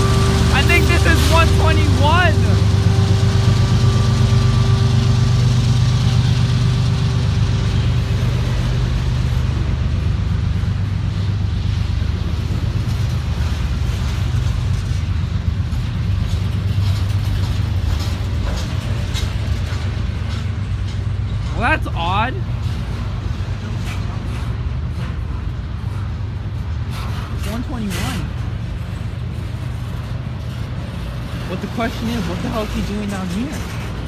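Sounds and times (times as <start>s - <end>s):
high steady tone: 0.0s - 5.9s
diesel locomotive engine rumble: 0.0s - 34.0s
train wheels clicking on rails: 0.0s - 34.0s.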